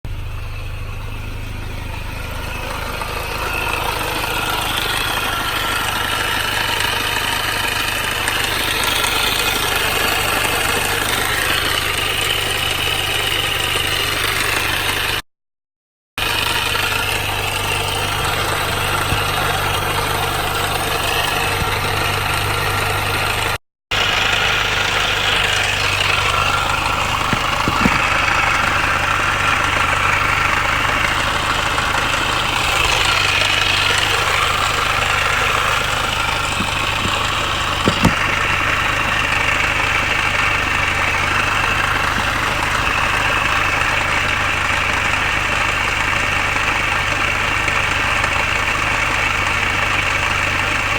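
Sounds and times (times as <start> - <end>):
car engine idling with rattle: 0.0 - 15.2, 16.2 - 50.9.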